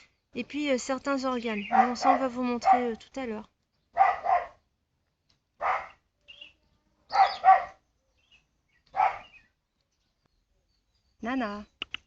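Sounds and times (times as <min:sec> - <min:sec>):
small dog barking: 0:01.7 - 0:03.0, 0:04.0 - 0:04.6, 0:05.6 - 0:06.0, 0:07.1 - 0:07.8, 0:08.9 - 0:09.4.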